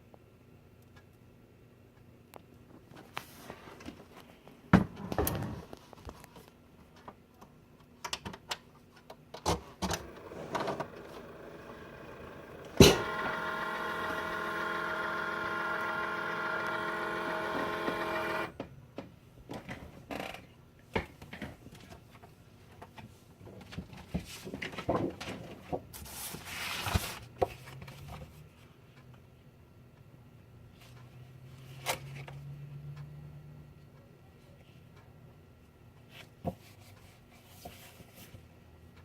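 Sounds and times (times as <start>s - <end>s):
machine clicks and knocks: 9.8s - 18.6s
multi-toned motor whine: 10.0s - 18.5s.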